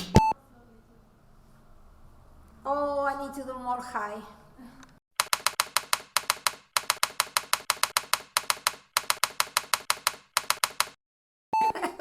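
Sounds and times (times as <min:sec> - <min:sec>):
rapid keyboard typing: 0:05.2 - 0:11.0.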